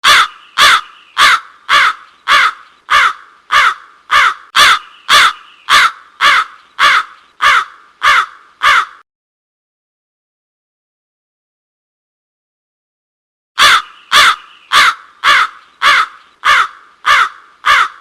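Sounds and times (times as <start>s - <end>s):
crow cawing: 0.0s - 9.0s, 13.6s - 18.0s.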